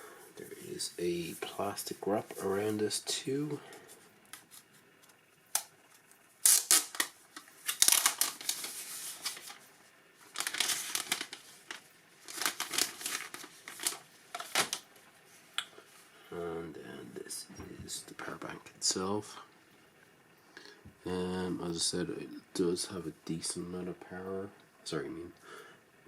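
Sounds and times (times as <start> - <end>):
plastic wrap crinkling and tearing: 6.4 - 9.6, 10.2 - 14.8.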